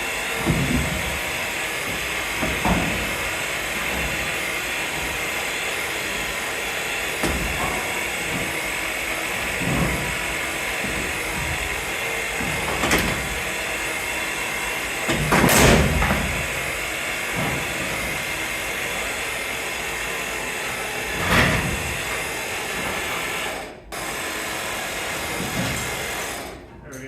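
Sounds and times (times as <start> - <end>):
metal clunks: 0.0 - 19.1
mechanical background noise: 0.0 - 19.8.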